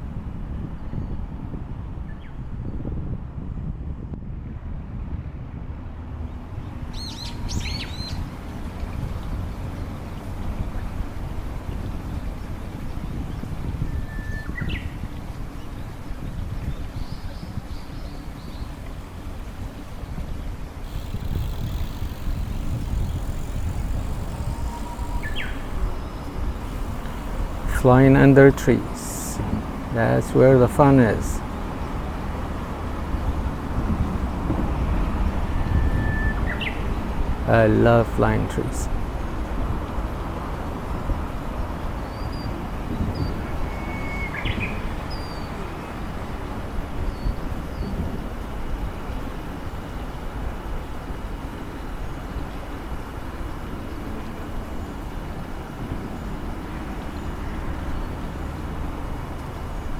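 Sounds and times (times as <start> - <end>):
wind on microphone: 16.2 - 37.5
road traffic rumble: 16.8 - 52.4, 53.1 - 59.9
birds chirping: 17.1 - 38.9, 42.1 - 46.5.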